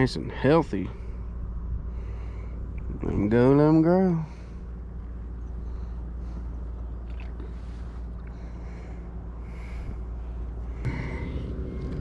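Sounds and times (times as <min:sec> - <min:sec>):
steady low rumble: 0:00.0 - 0:12.0
soft water splashes: 0:06.8 - 0:08.3.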